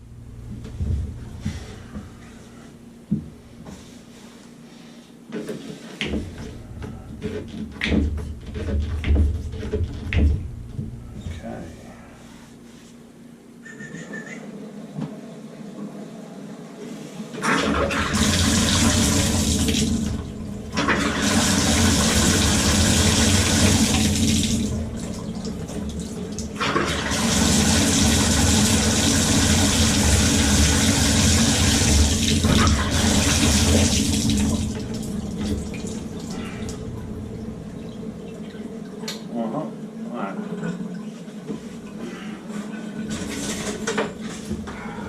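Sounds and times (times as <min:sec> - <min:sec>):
water running from shower valve: 0:17.7 - 0:38.7.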